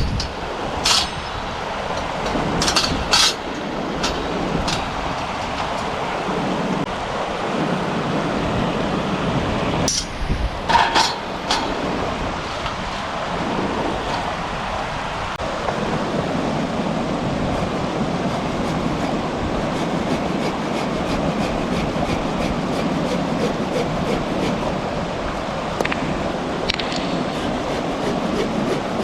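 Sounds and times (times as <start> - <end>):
river water rushing: 11.2 - 29.0.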